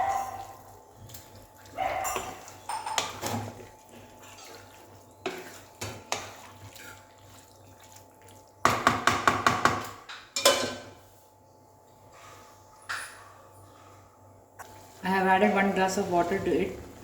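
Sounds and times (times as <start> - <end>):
spoon scraping and knocking pan: 2.0 - 6.5.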